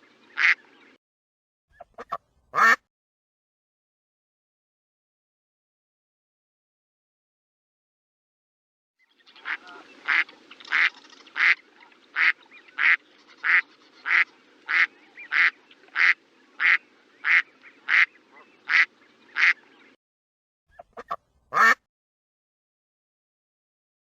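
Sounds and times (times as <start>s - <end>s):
duck quacking: 0.4s - 0.6s, 1.8s - 2.8s, 9.4s - 11.6s, 12.2s - 19.6s, 20.7s - 21.9s.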